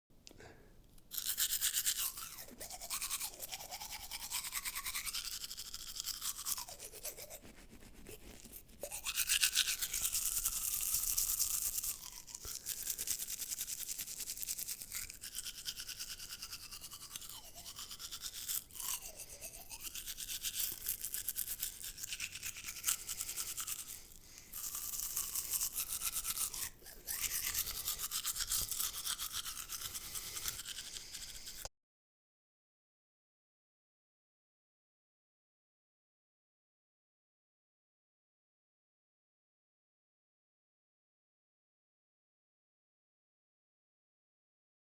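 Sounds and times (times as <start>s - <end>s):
toothbrush scrubbing teeth: 1.0s - 31.7s.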